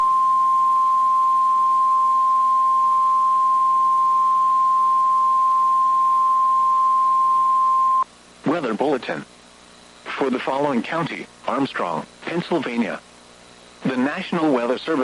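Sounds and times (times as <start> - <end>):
steady warning alarm tone: 0.0 - 8.0.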